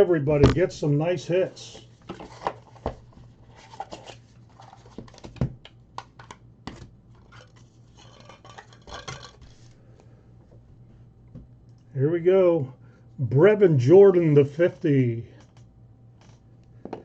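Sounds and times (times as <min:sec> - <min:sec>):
card packs rustling: 0:01.5 - 0:05.4.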